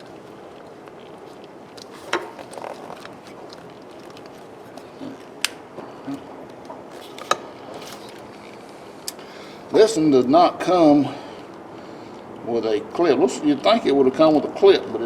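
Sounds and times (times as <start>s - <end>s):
light rustling and scraping: 0.0s - 5.9s, 6.8s - 8.9s.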